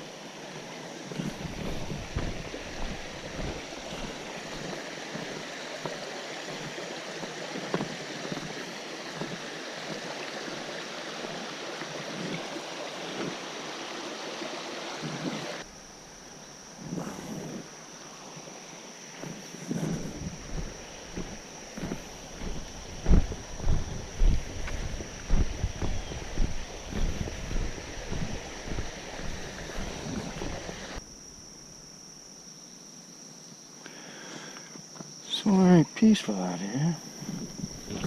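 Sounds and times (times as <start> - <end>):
water rushing over rocks: 0.0 - 15.7, 19.2 - 31.0.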